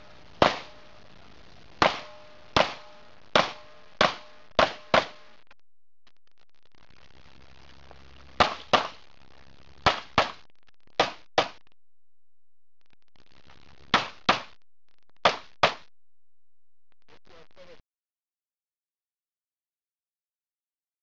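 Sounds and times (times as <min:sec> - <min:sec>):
pistol shots: 0:00.4 - 0:00.9, 0:01.8 - 0:05.3, 0:08.4 - 0:09.0, 0:09.8 - 0:10.4, 0:11.0 - 0:11.6, 0:13.9 - 0:14.6, 0:15.2 - 0:15.9.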